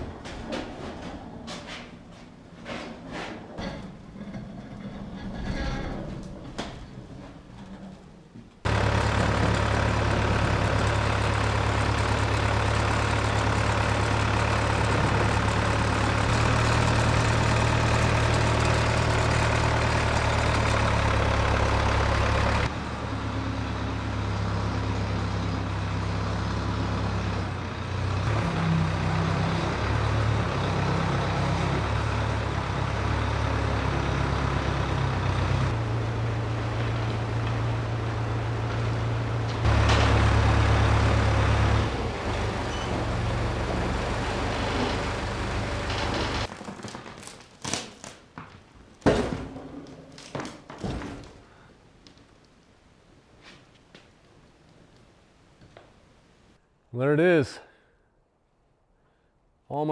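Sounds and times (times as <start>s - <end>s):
engine running: 8.6s - 46.5s.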